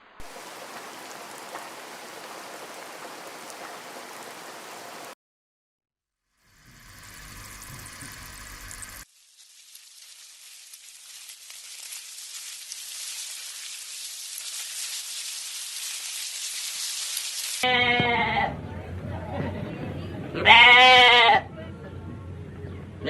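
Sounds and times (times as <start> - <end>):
hiss with fine crackles: 0.2 - 5.2, 6.5 - 17.6.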